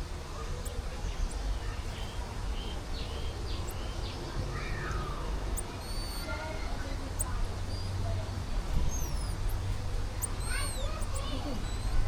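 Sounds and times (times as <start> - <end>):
birds chirping and whistling: 2.6 - 4.2, 4.8 - 6.4, 7.2 - 12.0.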